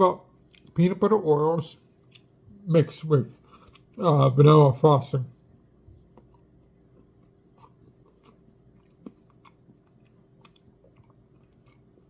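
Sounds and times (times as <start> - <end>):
person chewing: 0.4 - 0.8, 1.9 - 2.5, 3.3 - 4.0, 6.0 - 12.0.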